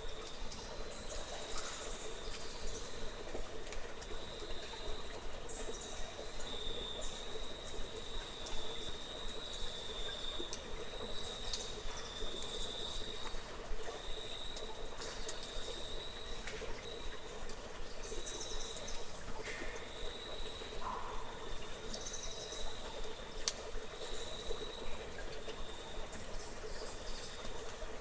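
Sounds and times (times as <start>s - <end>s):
faint clicks and ticks: 21.8s - 24.2s.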